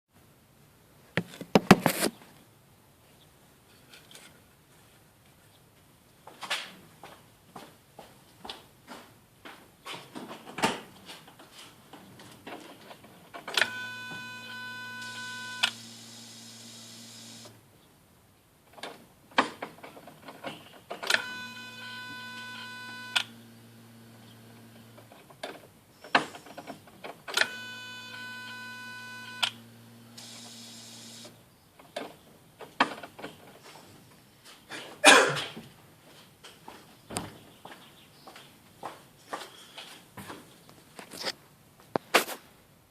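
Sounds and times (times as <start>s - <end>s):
throttle valve motor whine: 13.5s - 17.6s, 21.1s - 25.0s, 27.3s - 31.4s.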